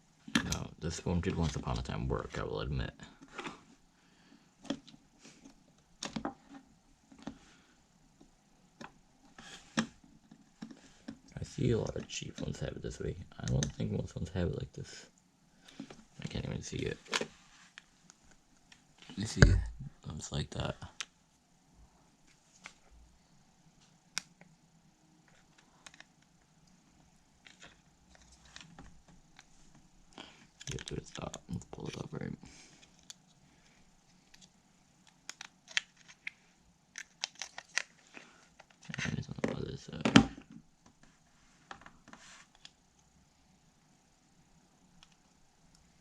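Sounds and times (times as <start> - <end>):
faint clicks of plastic parts: 4.6 - 7.5, 13.4 - 14.0, 25.2 - 43.1, 45.0 - 46.0
plastic phone parts clicking: 34.3 - 38.0.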